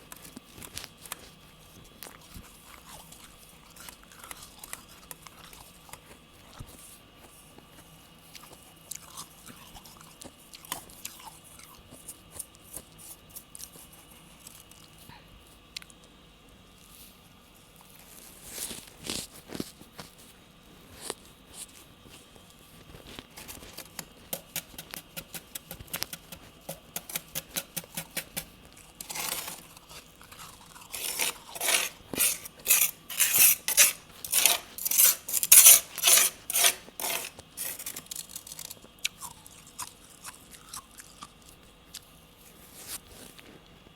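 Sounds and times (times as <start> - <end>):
chewing frost crunches: 0.0 - 15.1, 16.8 - 43.6.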